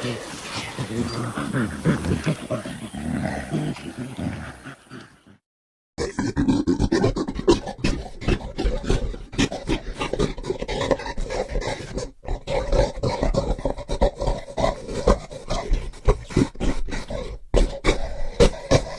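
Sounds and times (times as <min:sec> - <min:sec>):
gorilla grunting calls: 0:00.0 - 0:05.4.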